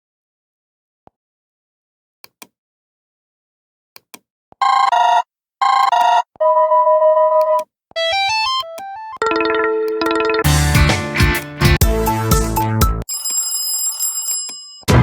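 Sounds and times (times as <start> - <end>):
phone ringtone previews: 6.5 - 10.6.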